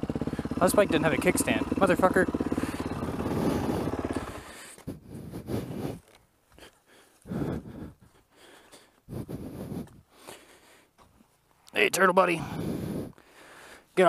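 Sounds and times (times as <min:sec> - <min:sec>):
dirt bike engine: 0:00.0 - 0:06.2
breaths on microphone: 0:02.6 - 0:10.9, 0:12.4 - 0:14.0.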